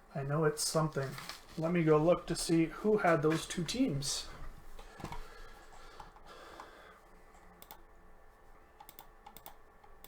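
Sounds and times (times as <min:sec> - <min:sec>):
typing on computer keyboard: 0:08.8 - 0:10.0.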